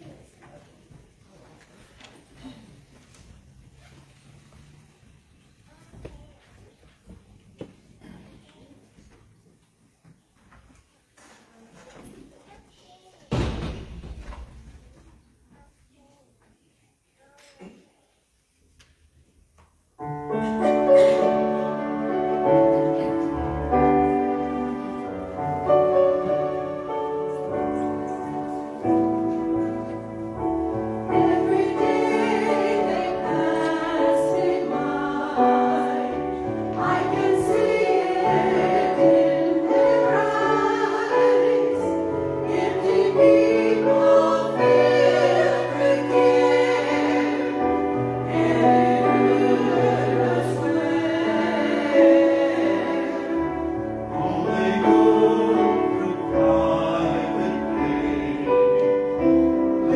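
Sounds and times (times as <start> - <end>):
choir singing a hymn: 20.0 - 59.9
piano accompaniment: 20.0 - 59.9.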